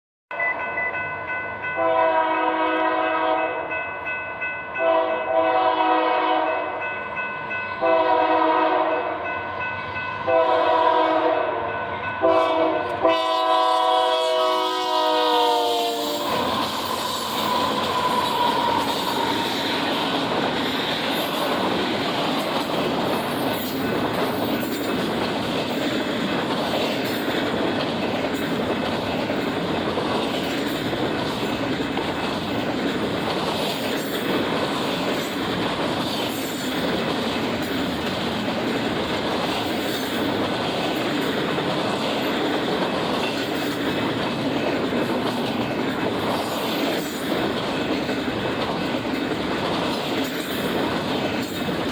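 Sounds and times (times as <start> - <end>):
train horn: 1.8 - 3.7, 4.8 - 6.8, 7.8 - 9.3, 10.2 - 20.0
train wheels clacking on rail joints: 15.7 - 51.9.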